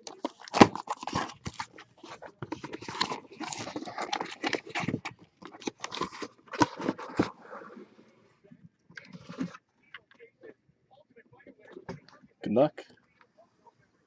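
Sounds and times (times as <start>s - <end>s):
card box and wrapping being handled: 0.0s - 8.0s.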